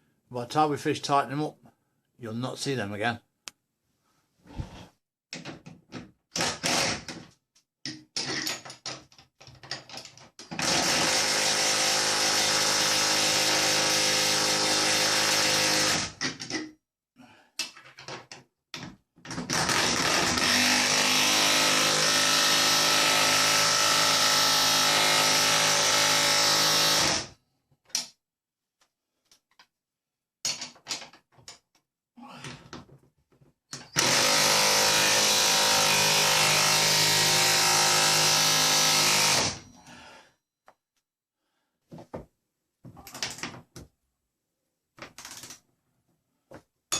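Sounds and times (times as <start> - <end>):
power drill running: 10.6 - 16.1, 19.5 - 27.3, 34.0 - 39.6.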